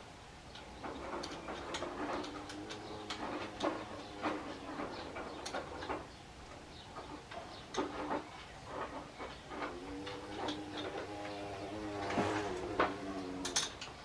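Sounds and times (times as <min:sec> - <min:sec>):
hand tools clicking and tapping: 0:07.0 - 0:14.0.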